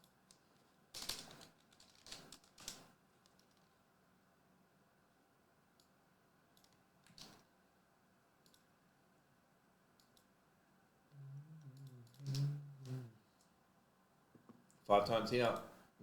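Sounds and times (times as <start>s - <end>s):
computer mouse clicks: 6.6s - 7.5s, 8.4s - 8.7s, 10.0s - 10.3s, 11.8s - 12.4s
man mumbling: 11.2s - 13.2s.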